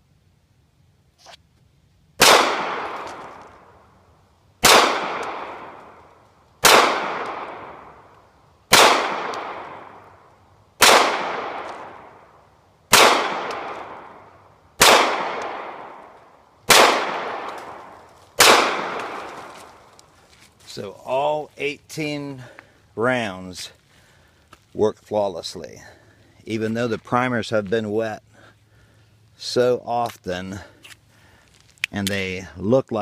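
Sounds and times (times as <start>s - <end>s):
handgun shots with echo: 2.2s - 3.4s, 4.6s - 5.8s, 6.6s - 7.7s, 8.7s - 9.9s, 10.8s - 12.0s, 12.9s - 14.1s, 14.8s - 16.0s, 16.7s - 19.6s.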